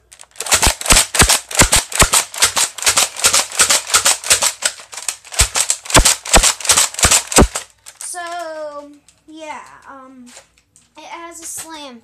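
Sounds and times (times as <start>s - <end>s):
toy blaster plastic clacks: 0.0s - 9.2s.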